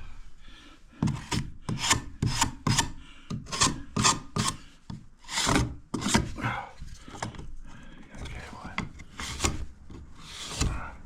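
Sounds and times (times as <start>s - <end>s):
plasterboard rasping on box edges: 1.0s - 6.4s, 8.2s - 10.9s.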